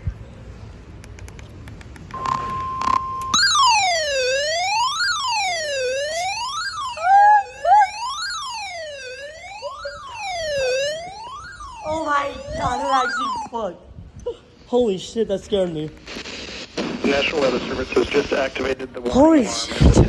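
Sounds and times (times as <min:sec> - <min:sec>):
steady high alarm beep: 0:02.2 - 0:13.6
wailing radio alarm: 0:02.2 - 0:13.7.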